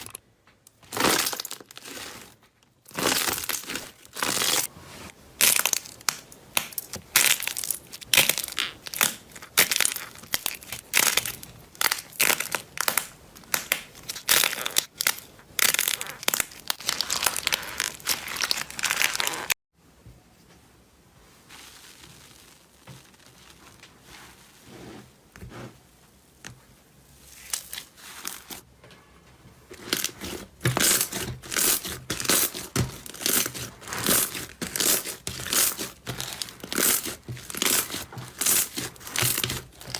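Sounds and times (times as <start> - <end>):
crunchy slime crackling: 0.8 - 4.7, 5.4 - 19.6, 21.4 - 24.7, 29.8 - 39.9.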